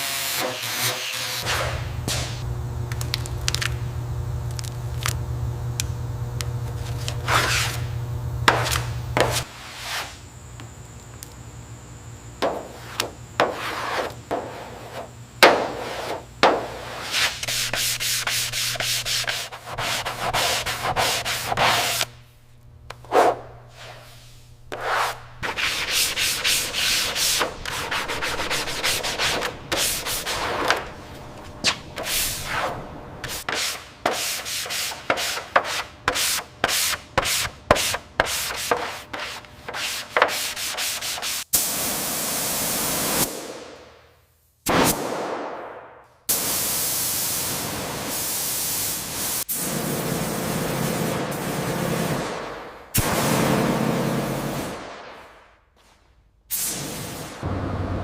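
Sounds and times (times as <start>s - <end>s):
steady low hum: 1.4s - 41.3s
scraping and rubbing strokes: 12.6s - 22.2s, 23.0s - 31.0s.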